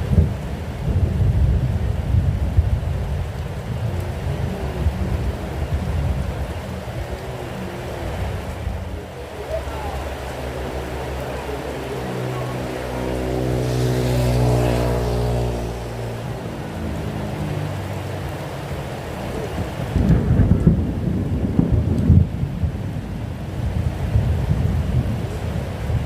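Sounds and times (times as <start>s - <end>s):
steady rain: 0.0s - 26.0s
thunder rumble: 0.0s - 26.0s
passing vehicle engine: 9.7s - 20.0s.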